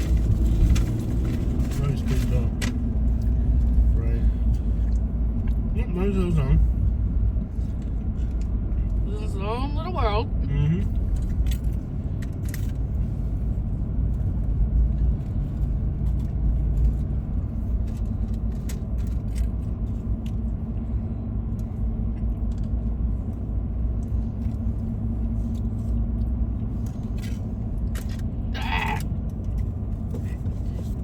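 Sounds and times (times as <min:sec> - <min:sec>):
truck engine and road rumble: 0:00.0 - 0:31.0
small clicks and rustles: 0:10.9 - 0:28.4, 0:29.0 - 0:31.0.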